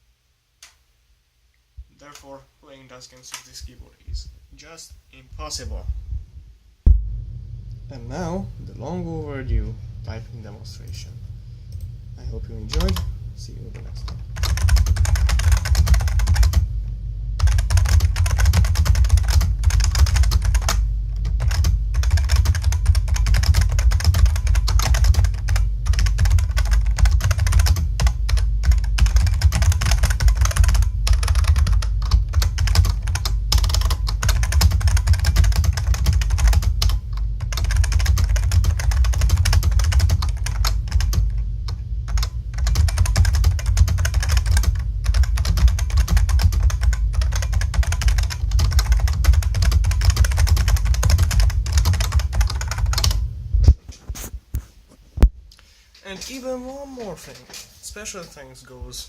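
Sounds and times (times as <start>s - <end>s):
clicky keyboard typing: 12.7s - 13.1s, 14.0s - 16.6s, 17.4s - 53.2s.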